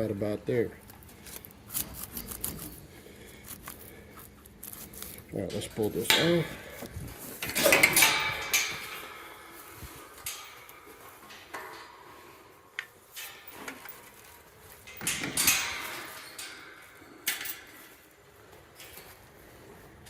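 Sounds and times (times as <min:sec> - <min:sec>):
metal clanks and knocks: 0:05.5 - 0:18.0.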